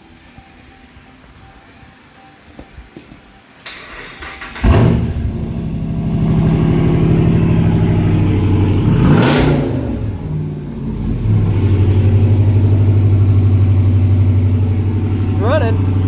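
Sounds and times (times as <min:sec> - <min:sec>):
truck engine running and revving: 0:04.6 - 0:16.0.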